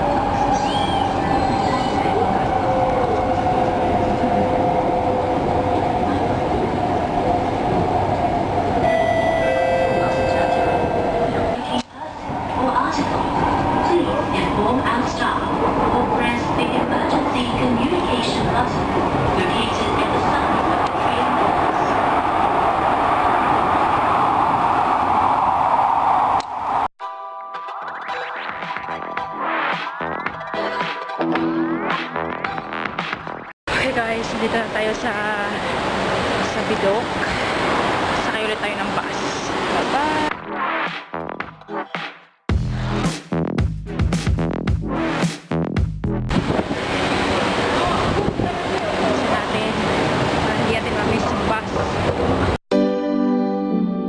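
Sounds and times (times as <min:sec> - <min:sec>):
train whining tones: 0:00.0 - 0:26.8
train rumble: 0:00.0 - 0:26.9, 0:33.7 - 0:40.3, 0:46.3 - 0:52.6
background music: 0:27.0 - 0:33.5, 0:52.7 - 0:54.0.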